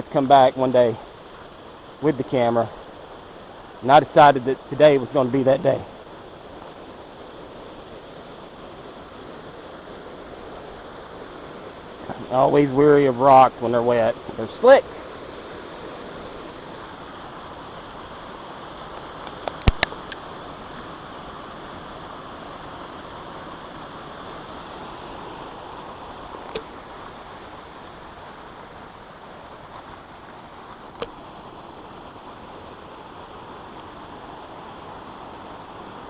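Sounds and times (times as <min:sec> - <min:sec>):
water rushing over waterfall: 0:00.0 - 0:36.0
sharp clicks: 0:19.3 - 0:20.2.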